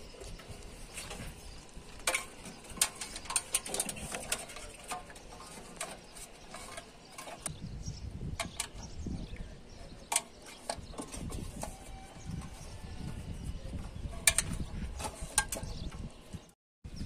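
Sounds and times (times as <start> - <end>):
hand tools clicking and knocking: 1.9 - 7.5, 10.1 - 12.5, 14.1 - 16.0.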